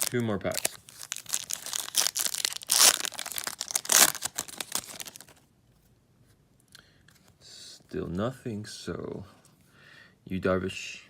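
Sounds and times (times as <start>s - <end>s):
foil wrapper tearing and crinkling: 0.0s - 5.4s.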